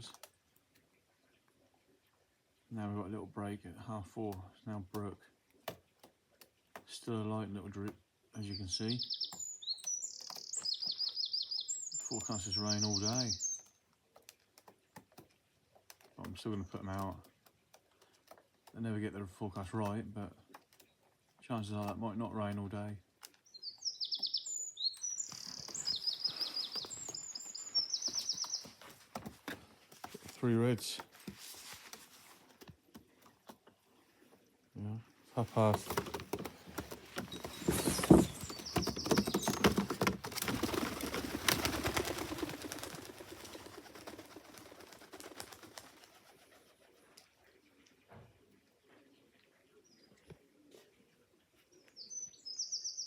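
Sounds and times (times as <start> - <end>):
songbirds chirping: 0.0 - 53.0
high bird trills: 23.5 - 28.9, 35.6 - 42.3
pigeon wings flapping: 35.4 - 47.0.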